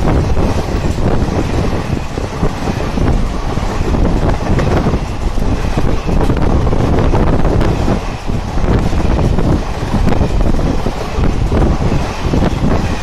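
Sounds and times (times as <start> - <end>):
train wheels rumbling on rails: 0.0 - 13.0
wind buffeting microphone: 0.0 - 13.0.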